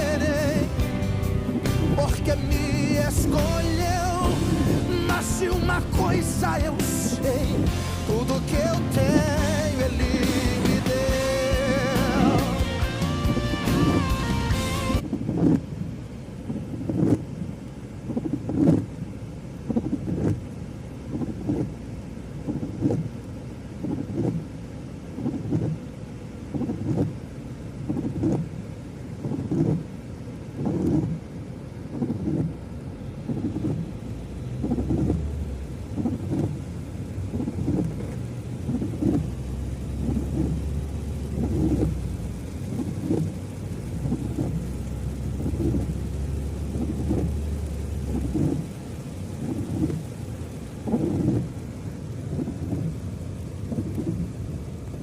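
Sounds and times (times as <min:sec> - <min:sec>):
rain falling: 0:00.0 - 0:55.0
thunder rumbling: 0:01.3 - 0:15.4, 0:33.3 - 0:55.0.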